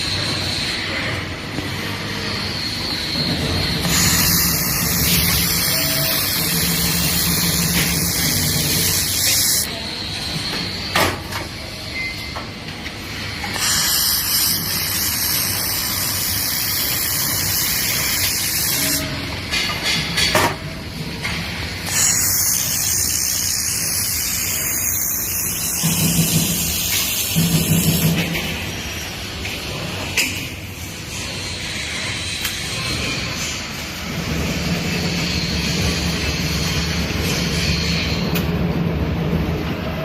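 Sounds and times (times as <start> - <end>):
welding machine gas hiss: 3.6 - 9.7, 13.0 - 19.1, 21.8 - 28.4.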